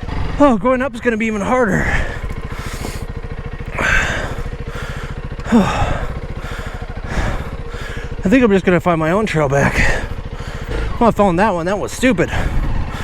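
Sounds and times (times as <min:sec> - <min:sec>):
motorcycle engine idling: 0:00.0 - 0:13.0
heavy breathing: 0:01.8 - 0:08.3, 0:09.7 - 0:11.0, 0:12.3 - 0:13.0
person grunting: 0:03.7 - 0:08.1.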